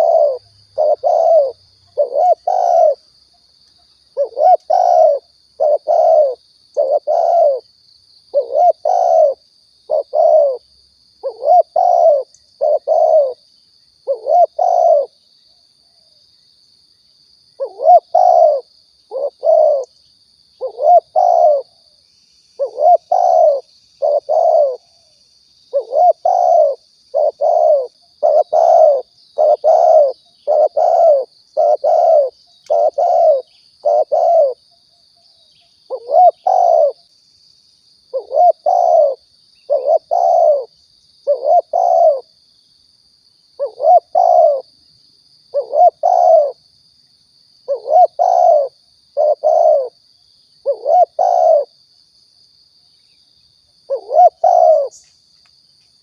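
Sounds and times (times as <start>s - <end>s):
dove cooing: 0.0s - 3.0s, 4.2s - 7.7s, 8.3s - 13.4s, 14.0s - 15.2s, 17.6s - 19.9s, 20.6s - 21.8s, 22.6s - 25.1s, 25.7s - 34.6s, 35.9s - 37.0s, 38.1s - 42.3s, 43.6s - 44.7s, 45.5s - 46.6s, 47.7s - 50.0s, 50.6s - 51.7s, 53.9s - 55.0s.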